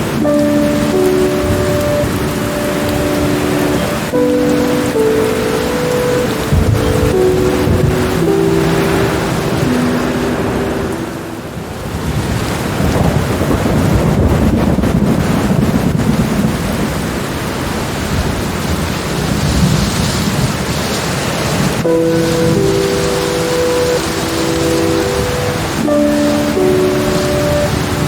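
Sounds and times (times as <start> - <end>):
held musical notes: 0.0 - 12.0, 21.8 - 28.0
heavy rain falling: 0.0 - 28.0
thunder rumbling: 0.0 - 28.0.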